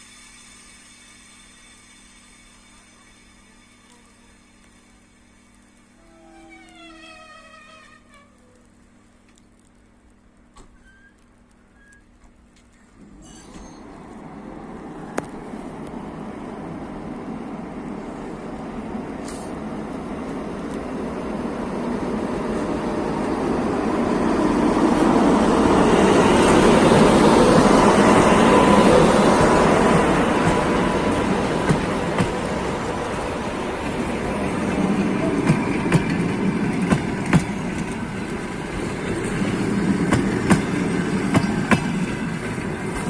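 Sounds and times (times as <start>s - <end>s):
train rumbling on track: 0.0s - 9.2s, 10.1s - 43.0s
wheels clacking over rail joints: 25.7s - 43.0s.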